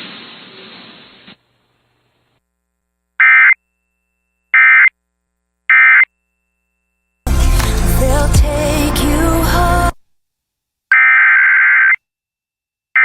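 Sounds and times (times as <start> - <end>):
digital data tone bursts: 3.2 - 3.6.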